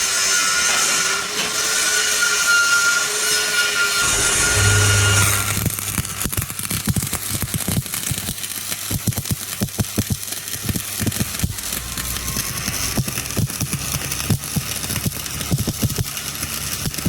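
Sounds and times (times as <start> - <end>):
arc welding hiss and crackle: 4.0 - 17.0.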